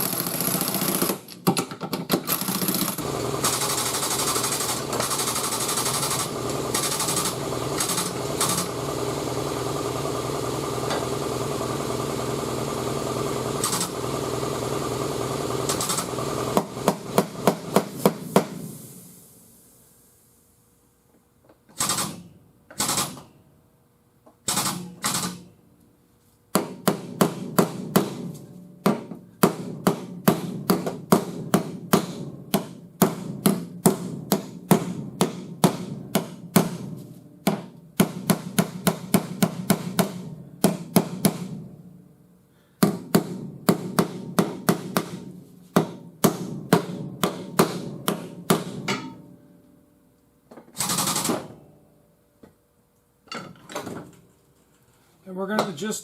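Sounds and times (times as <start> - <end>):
hammer blows on sheet metal: 43.7 - 49.4.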